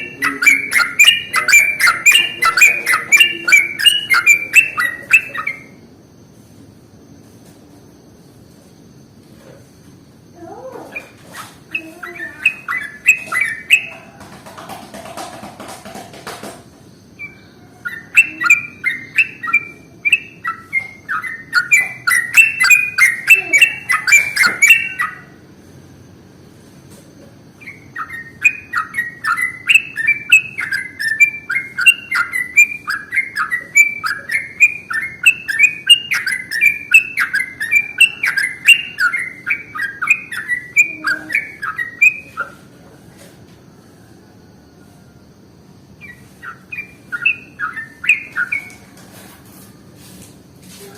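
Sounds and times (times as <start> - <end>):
bird singing bubbly chatter: 0.0 - 5.9, 10.5 - 25.5, 27.6 - 42.8, 45.9 - 49.0.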